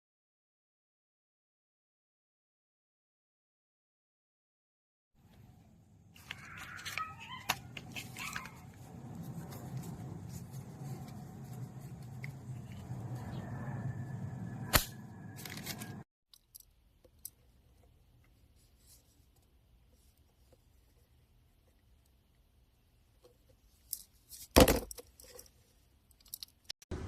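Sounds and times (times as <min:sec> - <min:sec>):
handling rustling: 0:05.2 - 0:13.3, 0:15.4 - 0:22.2.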